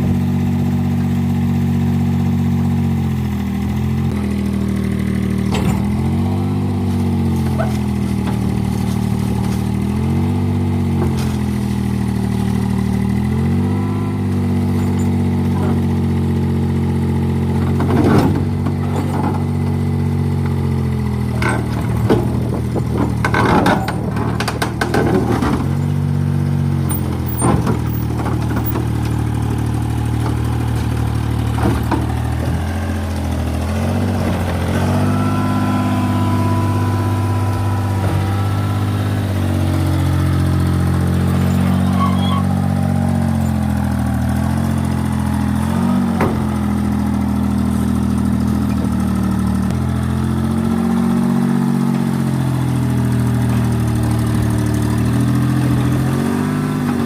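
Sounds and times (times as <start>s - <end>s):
diesel engine running: 0.0s - 57.0s
metal knocks and clanks: 5.3s - 9.9s, 21.2s - 26.0s, 26.9s - 34.7s.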